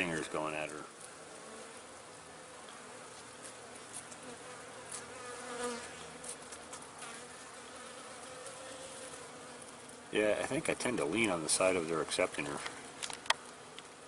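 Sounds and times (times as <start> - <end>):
honey bees buzzing: 0.0 - 14.0
bee flying close past: 1.0 - 10.1.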